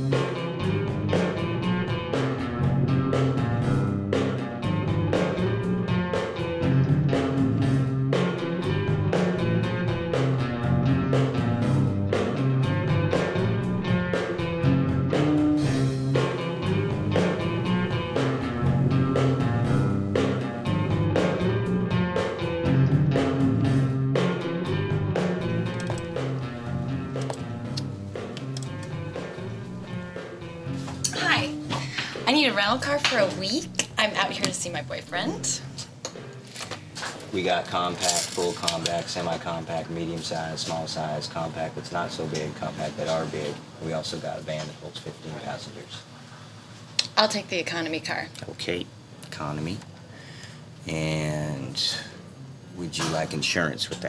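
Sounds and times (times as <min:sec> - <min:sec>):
rock music with guitar: 0:00.0 - 0:34.3
steady drum beat: 0:00.0 - 0:35.8.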